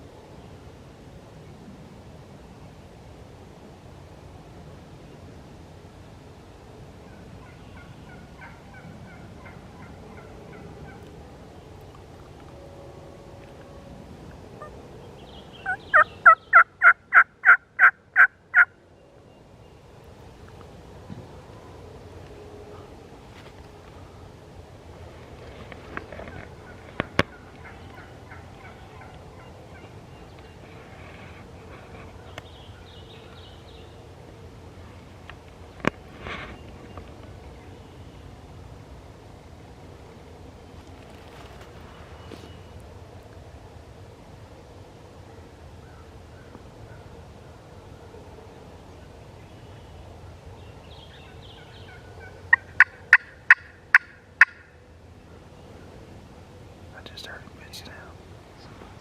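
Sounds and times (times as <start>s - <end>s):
outdoor background hiss: 0.0s - 59.0s
wild turkey gobbling: 7.4s - 11.1s, 15.6s - 18.7s, 25.9s - 31.4s, 51.5s - 54.8s
faint songbird chirps: 14.5s - 23.1s, 25.3s - 38.6s, 40.6s - 42.9s, 45.3s - 56.2s.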